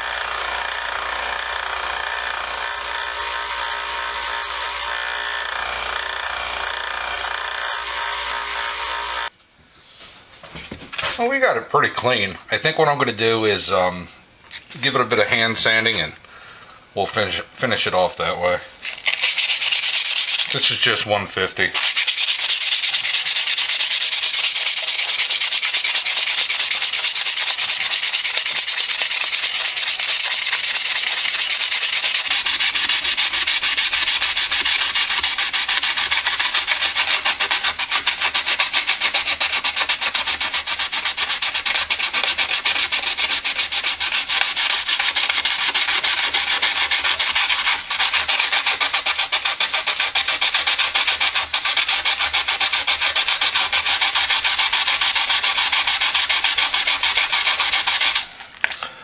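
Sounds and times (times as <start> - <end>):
sandpaper rubbing on wood: 2.3 - 5.0, 7.4 - 9.3, 19.0 - 20.8, 21.8 - 58.4.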